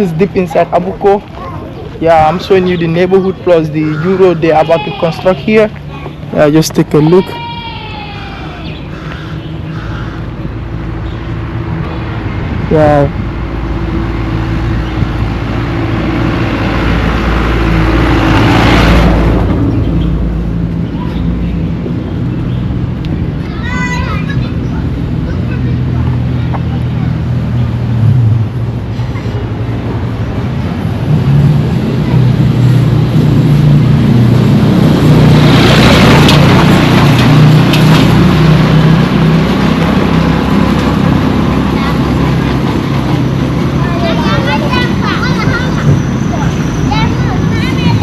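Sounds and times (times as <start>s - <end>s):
engine hum: 0.0s - 48.0s
car passing by: 11.9s - 21.5s, 26.4s - 48.0s.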